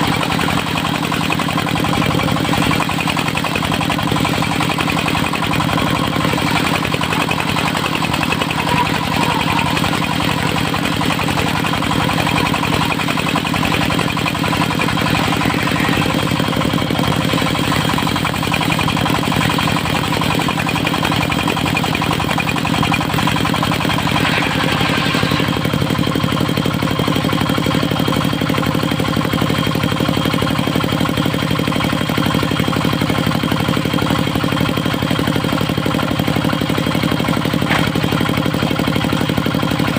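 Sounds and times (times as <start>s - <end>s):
sawmill engine droning: 0.0s - 39.9s.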